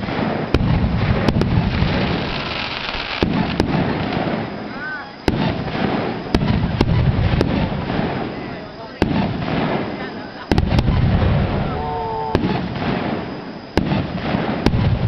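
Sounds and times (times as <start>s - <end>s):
fireworks sharp bangs: 0.0s - 15.0s
low rumble of fireworks: 0.0s - 15.0s.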